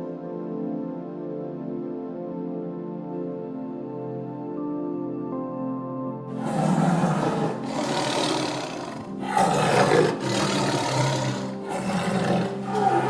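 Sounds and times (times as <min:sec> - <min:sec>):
soft background music: 0:00.0 - 0:13.0
animal roaring: 0:06.4 - 0:13.0.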